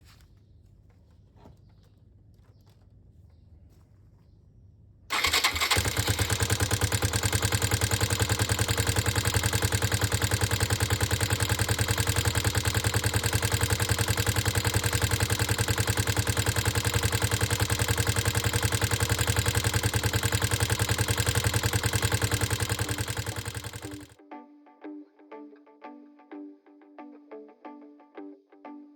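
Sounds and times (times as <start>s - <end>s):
motorcycle engine idling: 5.1s - 24.2s.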